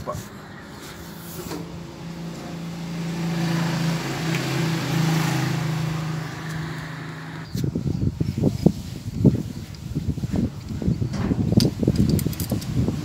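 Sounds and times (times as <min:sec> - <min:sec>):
vehicle engine running: 0:00.0 - 0:08.2.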